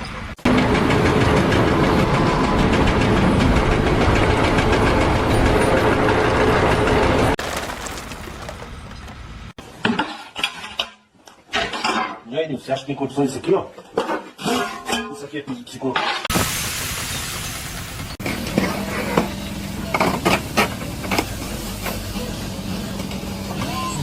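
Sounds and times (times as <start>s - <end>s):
clattering knocks: 7.4s - 9.6s.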